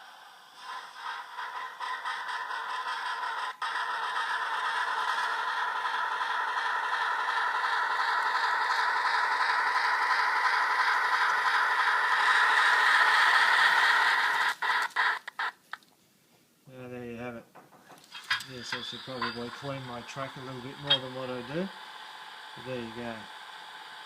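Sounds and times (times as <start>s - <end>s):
model steam locomotive exhaust chuffing: 0.0s - 15.5s, 18.1s - 24.0s.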